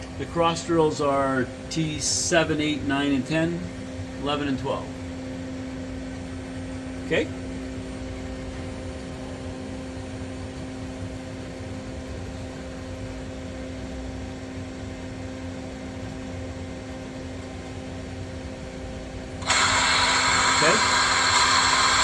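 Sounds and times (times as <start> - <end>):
lathe humming with steady tones: 14.5 - 22.0
high-pitched tool whir: 19.4 - 22.0.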